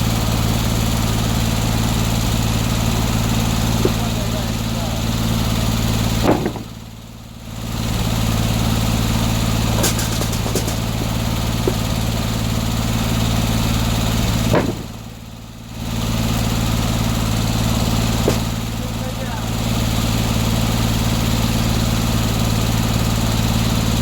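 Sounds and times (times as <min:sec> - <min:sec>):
sawmill engine running: 0:00.0 - 0:24.0.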